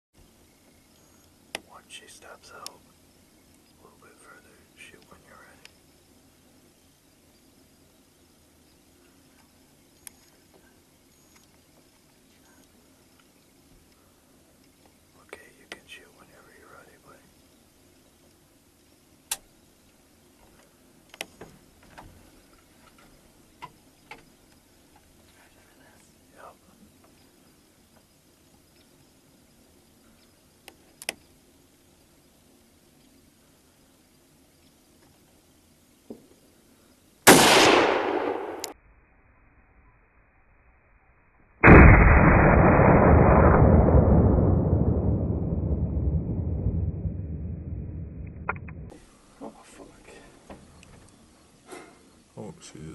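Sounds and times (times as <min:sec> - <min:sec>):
faint sharp clicks: 0:02.6 - 0:02.8, 0:05.0 - 0:05.8, 0:14.6 - 0:15.9, 0:30.2 - 0:31.3, 0:38.2 - 0:38.8
loud blast with dull rumble: 0:37.3 - 0:38.7, 0:41.6 - 0:48.6
rifle shot with echo: 0:37.3 - 0:38.8, 0:41.6 - 0:47.2.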